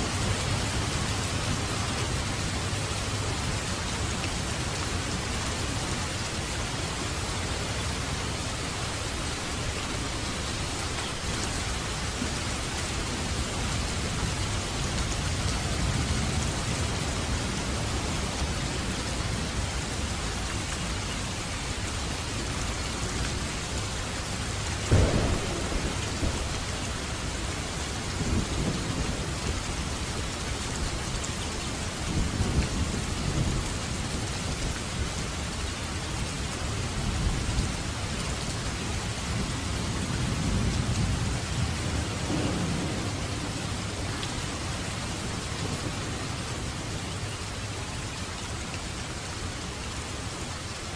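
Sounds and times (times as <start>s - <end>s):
heavy rain: 0.0s - 50.9s
rolling thunder: 24.8s - 30.1s, 39.0s - 44.6s
thunderclap: 24.9s - 29.4s, 42.2s - 43.9s.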